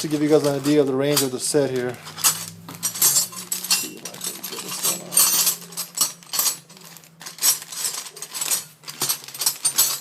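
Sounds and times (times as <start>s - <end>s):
metal wrenches clinking: 0.0s - 10.0s.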